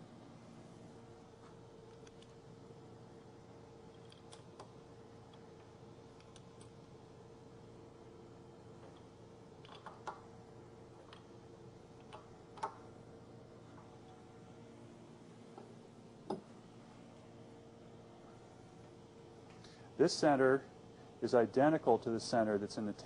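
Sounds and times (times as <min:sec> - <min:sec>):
faint steady hum: 0:00.0 - 0:23.0
metal parts clicking and tapping: 0:03.9 - 0:05.4.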